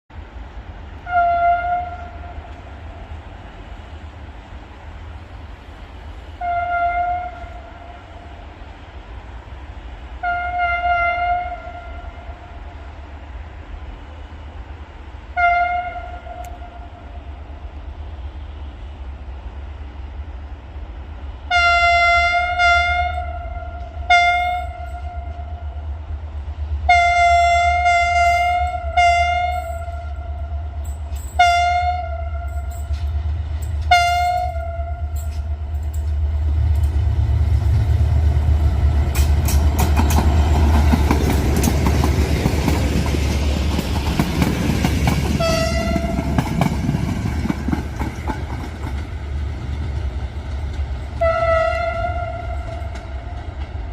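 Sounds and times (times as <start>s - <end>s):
train rumble: 0.1s - 53.9s
locomotive horn: 1.0s - 2.7s, 6.4s - 8.3s, 10.2s - 12.8s, 15.3s - 17.2s, 21.5s - 25.8s, 26.9s - 33.1s, 33.8s - 35.8s, 45.4s - 46.6s, 51.2s - 53.4s.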